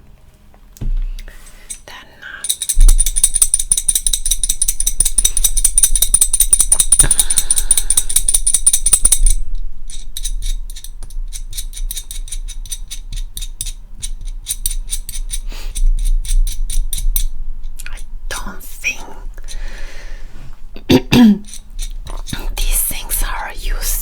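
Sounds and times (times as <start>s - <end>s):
high metallic ringing: 1.6s - 12.9s
rapid clicking and rattling: 2.4s - 17.8s.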